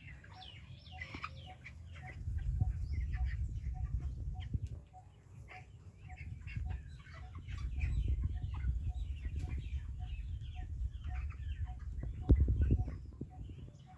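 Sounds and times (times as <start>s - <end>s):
chickens clucking: 0.0s - 13.9s
steady low rumble: 2.0s - 4.8s, 6.2s - 13.6s.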